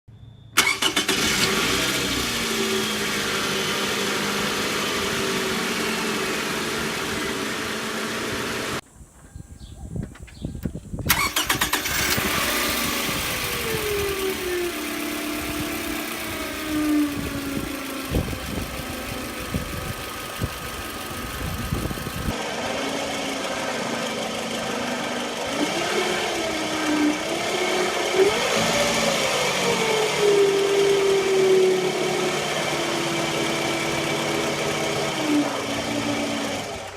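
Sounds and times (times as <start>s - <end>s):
car engine running: 1.0s - 8.8s, 11.1s - 36.9s
alternator whine: 11.1s - 30.4s.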